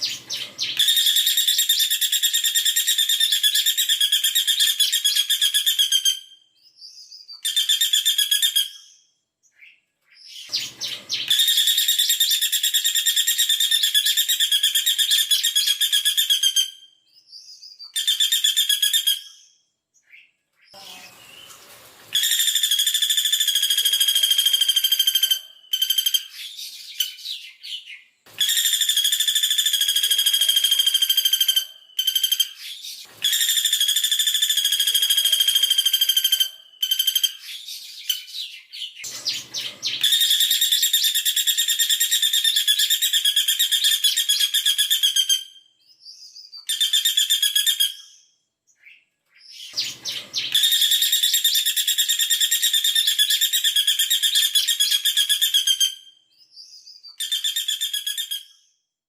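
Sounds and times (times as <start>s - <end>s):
woodpecker shrill trills: 0.0s - 6.3s, 22.2s - 27.5s, 28.4s - 38.5s, 39.3s - 45.6s, 46.2s - 48.3s, 49.8s - 58.7s.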